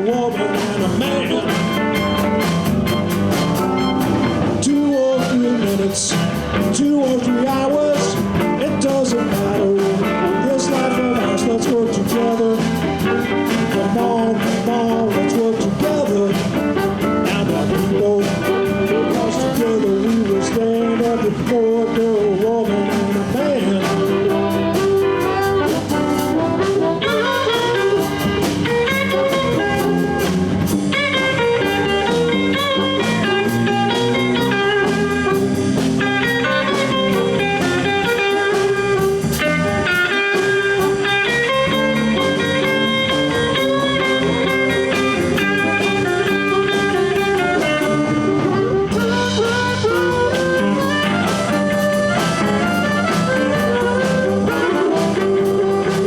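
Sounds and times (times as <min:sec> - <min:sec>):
lead instrument holding long notes: 0:00.0 - 0:05.5, 0:23.0 - 0:56.0
blues band playing: 0:00.0 - 0:56.0.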